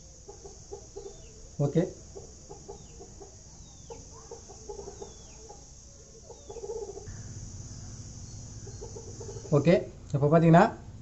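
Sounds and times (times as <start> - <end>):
hens clucking: 0.0 - 10.1
faint high bird chirps: 0.0 - 10.2
low rumble: 7.1 - 11.0.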